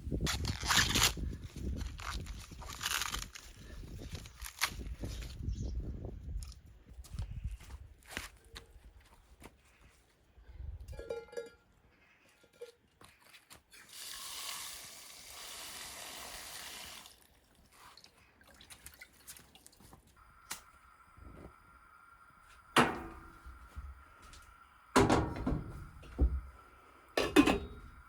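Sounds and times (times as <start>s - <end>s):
tap water running: 13.8s - 17.3s, 20.2s - 28.0s.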